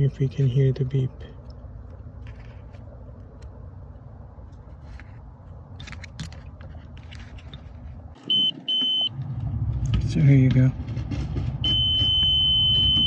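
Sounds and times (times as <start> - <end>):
multimeter continuity beep: 8.3 - 9.1, 11.7 - 13.0.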